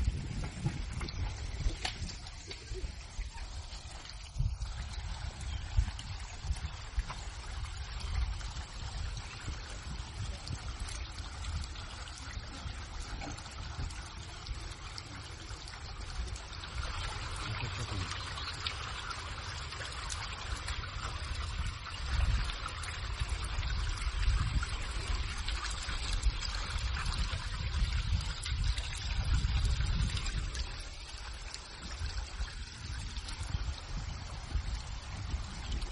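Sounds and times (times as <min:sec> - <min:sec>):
water running and trickling: 0:00.0 - 0:35.9.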